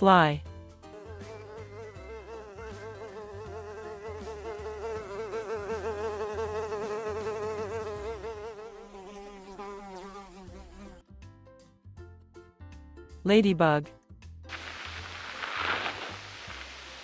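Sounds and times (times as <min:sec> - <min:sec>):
fly buzzing: 0:00.8 - 0:11.0, 0:14.5 - 0:17.0.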